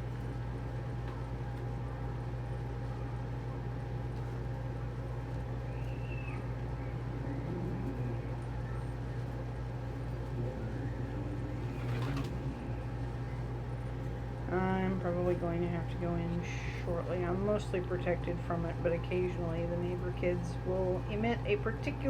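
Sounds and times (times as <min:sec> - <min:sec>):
steady low hum: 0:00.0 - 0:22.0
pigeons cooing softly: 0:05.6 - 0:14.3.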